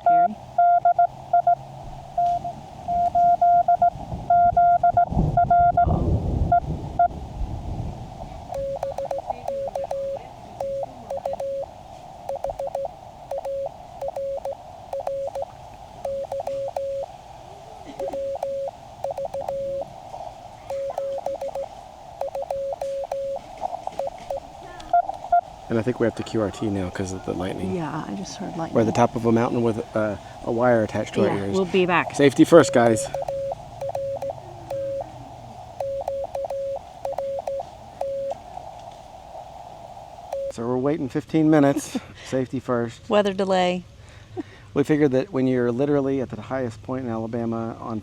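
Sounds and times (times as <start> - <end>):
faint morse code signal: 0.0 - 1.6, 2.2 - 7.2, 8.5 - 17.2, 17.9 - 28.0, 28.8 - 40.6
morse code sidetone: 0.0 - 1.6, 2.2 - 5.9, 8.5 - 17.1, 17.9 - 20.0, 20.6 - 27.0, 31.8 - 35.2, 35.8 - 38.4, 40.3 - 40.5
static crackles: 0.0 - 40.5
radio band hiss: 8.1 - 36.0.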